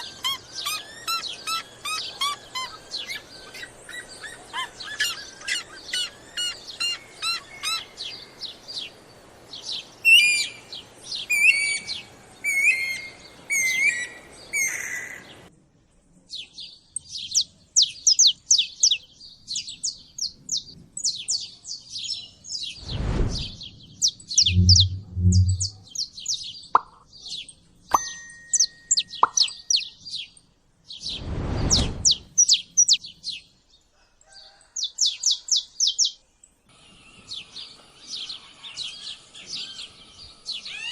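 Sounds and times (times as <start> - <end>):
songbirds chirping and trilling: 0.0 - 40.9
low thumps or whooshes: 22.8 - 23.7, 24.4 - 25.8, 31.1 - 32.3.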